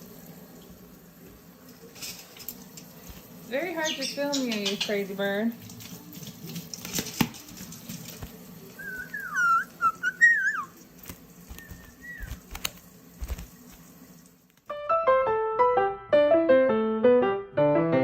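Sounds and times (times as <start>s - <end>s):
bird whistle-like calls: 8.8s - 10.8s, 11.5s - 12.5s
handling clicks and rustling: 11.0s - 13.8s.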